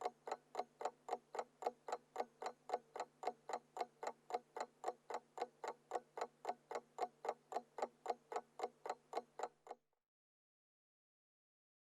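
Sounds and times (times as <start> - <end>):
alarm clock ticking: 0.0 - 9.6.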